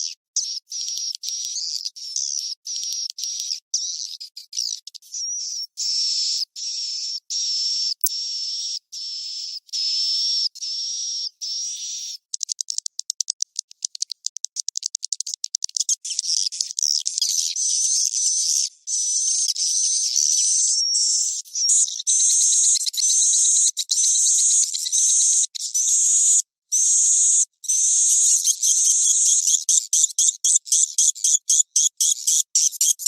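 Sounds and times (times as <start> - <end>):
buzzy high twittering chirps: 17.2 - 33.0.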